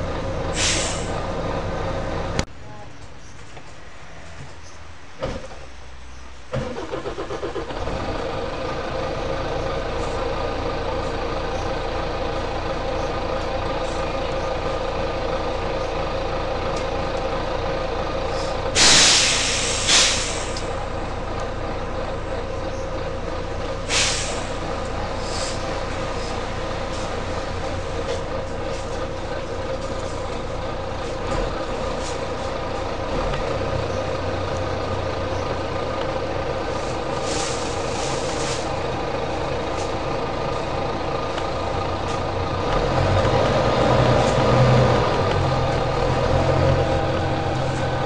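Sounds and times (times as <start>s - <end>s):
diesel engine cranking and idling: 0.0s - 3.7s, 6.4s - 48.0s
compressed air hissing: 0.5s - 1.2s, 18.4s - 20.7s, 23.8s - 27.3s, 37.1s - 38.8s.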